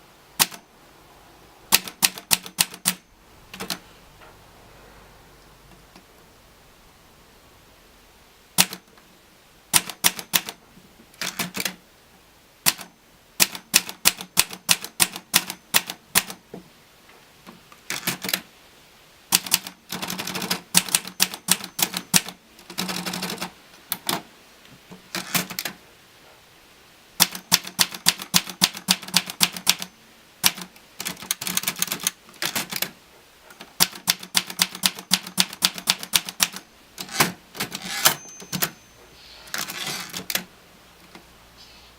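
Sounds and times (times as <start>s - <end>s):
typewriter key strikes: 1.7s - 3.0s, 8.6s - 8.8s, 9.7s - 10.6s, 12.6s - 16.4s, 19.3s - 23.5s, 27.2s - 32.9s, 33.8s - 38.9s.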